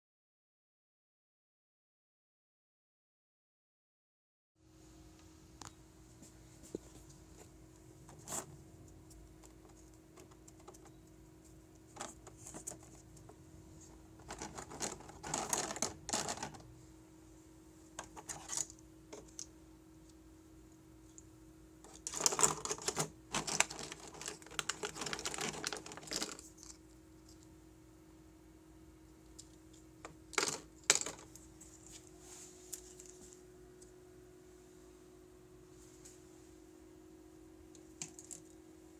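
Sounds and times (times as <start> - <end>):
faint steady hum: 4.6 - 38.9
packaging rustling and clicking: 14.2 - 16.6, 21.9 - 26.8.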